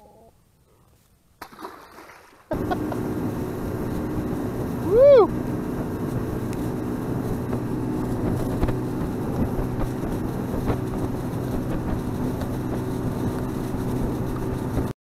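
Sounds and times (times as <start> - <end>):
water noise: 1.4 - 14.9
boat motor humming: 2.4 - 14.9
wind noise: 2.5 - 14.9.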